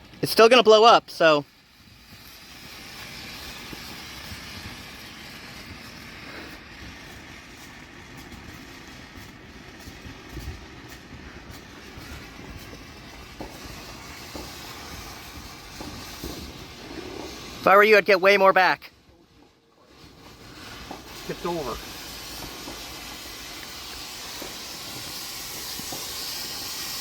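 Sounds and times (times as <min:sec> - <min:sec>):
rocket motor hissing: 0:00.0 - 0:18.9, 0:19.5 - 0:27.0
light crackles: 0:00.0 - 0:27.0.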